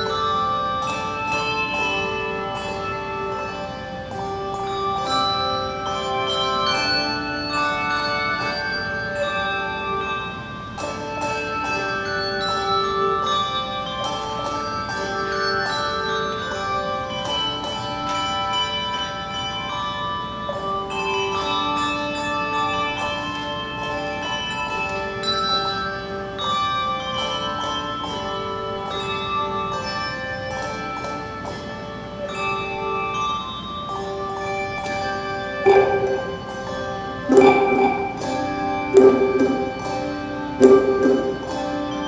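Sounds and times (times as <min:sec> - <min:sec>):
handbell choir ringing: 0:00.0 - 0:42.0.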